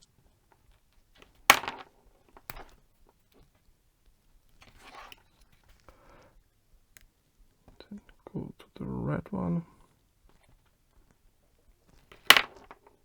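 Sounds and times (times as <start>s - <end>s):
soft rustle: 0.0s - 8.2s.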